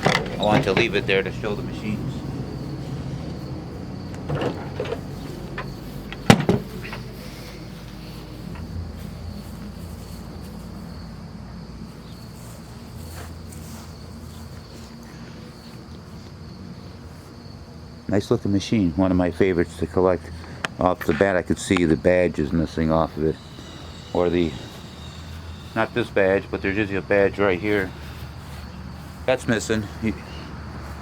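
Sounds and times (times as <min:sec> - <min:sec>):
steady low hum: 0:00.0 - 0:31.0
soft clunks: 0:04.1 - 0:07.2.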